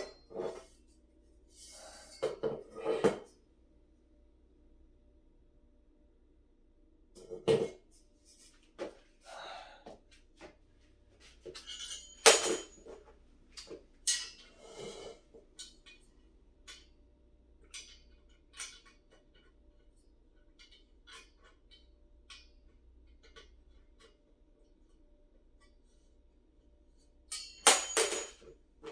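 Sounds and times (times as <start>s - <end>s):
metal desk parts clinking: 11.6s - 12.9s, 27.3s - 28.5s.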